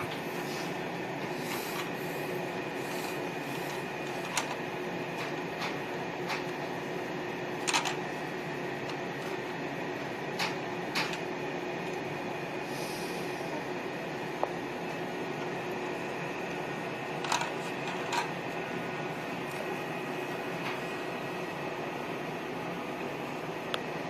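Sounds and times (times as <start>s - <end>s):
campfire hissing: 0.2s - 4.2s, 12.5s - 13.6s.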